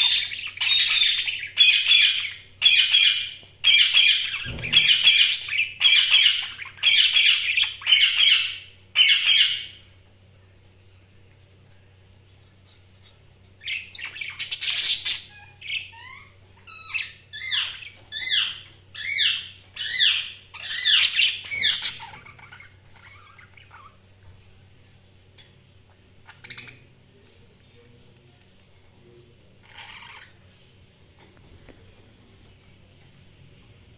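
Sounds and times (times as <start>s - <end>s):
budgerigar chirps and squawks: 13.7s - 24.0s.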